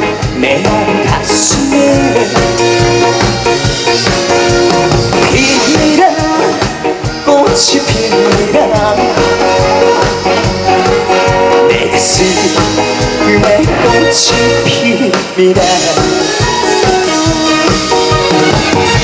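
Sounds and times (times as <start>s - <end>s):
trot song backing music: 0.0s - 19.0s.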